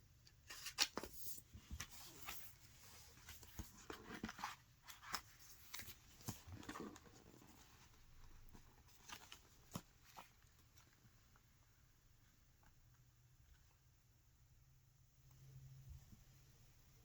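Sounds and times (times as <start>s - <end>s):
paper pages rustling: 0.3s - 11.5s.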